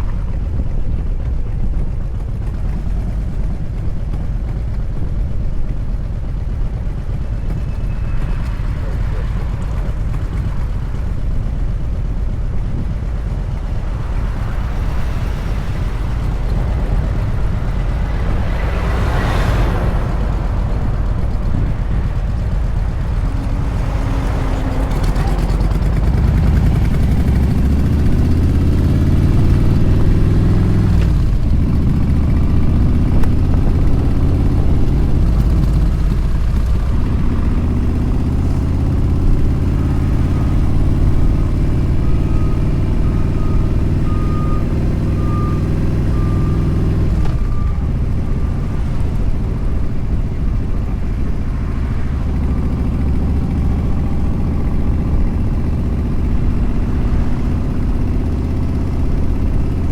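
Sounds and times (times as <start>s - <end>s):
motorcycle engine running: 0.0s - 59.9s
wind noise: 0.0s - 59.9s
faint beep: 7.3s - 10.8s, 12.9s - 33.2s, 34.0s - 50.4s.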